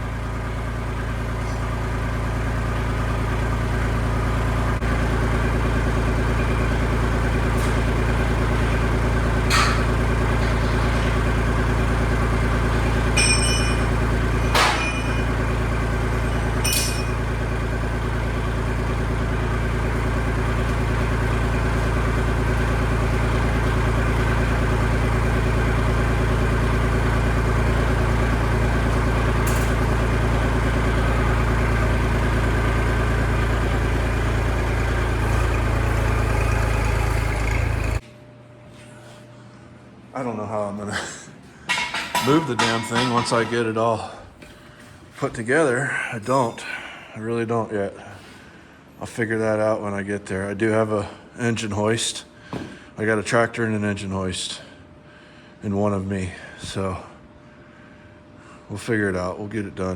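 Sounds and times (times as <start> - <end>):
tractor engine idling: 0.0 - 38.0, 41.4 - 47.2
sharp metallic knocks: 13.1 - 15.4, 16.6 - 17.2, 41.7 - 43.7.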